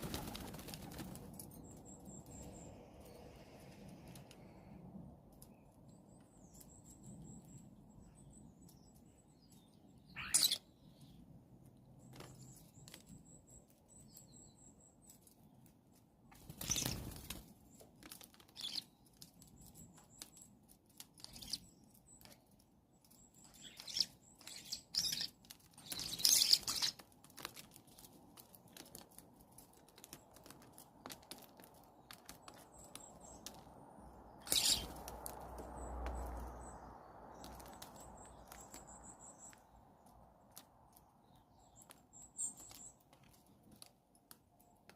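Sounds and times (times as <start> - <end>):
wing flaps: 0.0 - 1.2
birds squeaky whistles: 10.0 - 11.2, 16.6 - 17.2, 18.5 - 18.9, 21.2 - 21.8, 23.4 - 27.0, 34.4 - 35.1.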